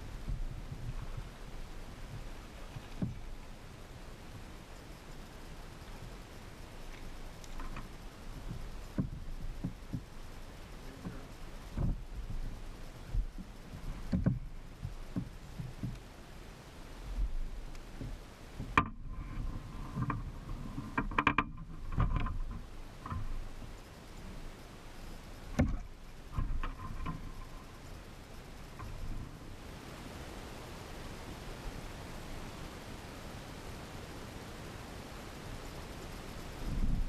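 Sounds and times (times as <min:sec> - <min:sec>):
gear knocking on kayak: 0:02.0 - 0:03.4, 0:06.9 - 0:10.2, 0:11.0 - 0:16.0, 0:17.2 - 0:23.6, 0:25.4 - 0:27.8.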